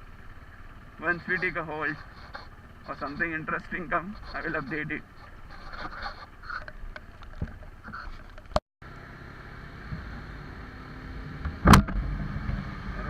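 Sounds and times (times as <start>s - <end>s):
motorcycle engine rumble: 0.0s - 13.0s.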